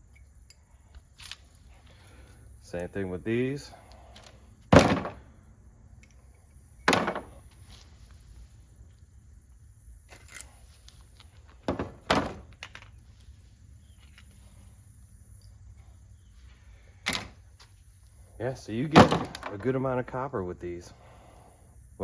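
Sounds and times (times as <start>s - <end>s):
scrap metal thunking down: 4.7s - 5.3s.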